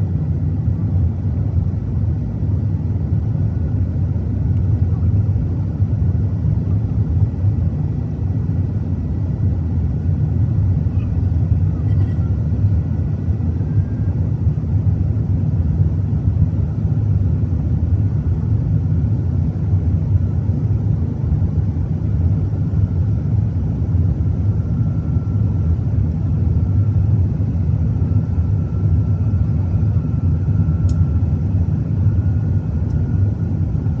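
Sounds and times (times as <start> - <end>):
jet engines rumbling: 21.0 - 34.0.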